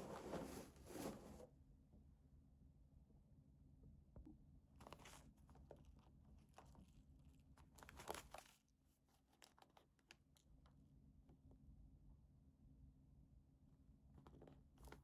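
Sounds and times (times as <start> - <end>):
packaging crinkling and rustling: 7.8 - 8.5.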